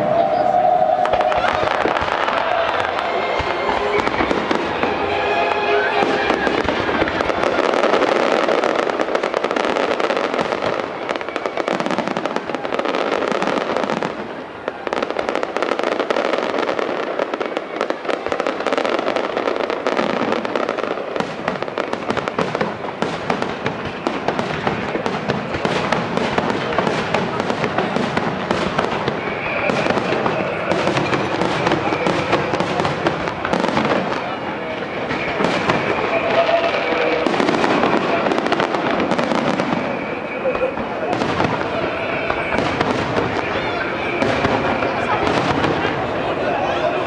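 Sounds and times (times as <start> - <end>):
fireworks crackling and popping: 0.0 - 47.0
faint whistle-like tone: 29.0 - 32.6, 39.5 - 41.1.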